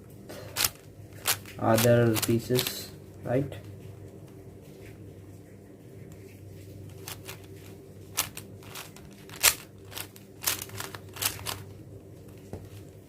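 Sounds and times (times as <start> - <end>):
plastic puzzle cube clicking: 0.6 - 2.8, 8.2 - 11.7.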